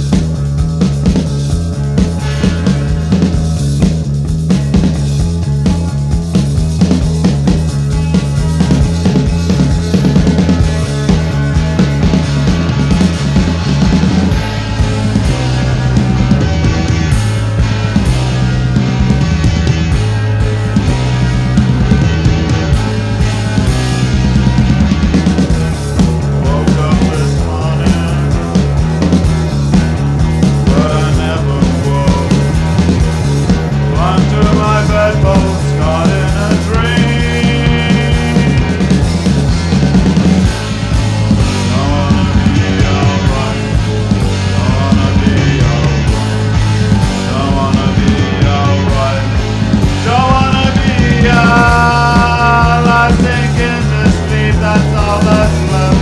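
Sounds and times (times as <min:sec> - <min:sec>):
bass line: 0:00.0 - 0:56.0
drum kit beat: 0:00.0 - 0:56.0
rock band playing: 0:00.0 - 0:56.0.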